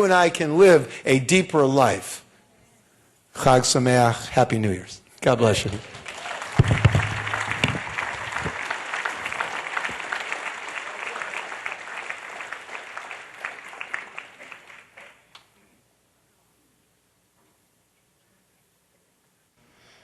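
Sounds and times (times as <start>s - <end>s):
congregation applauding: 5.6s - 15.3s
low thuds: 6.6s - 8.5s.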